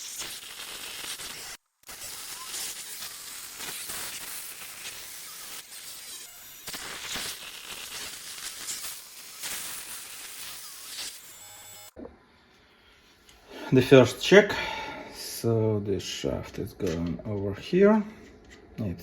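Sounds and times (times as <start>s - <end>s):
milling cutter cutting metal: 0.0s - 12.0s.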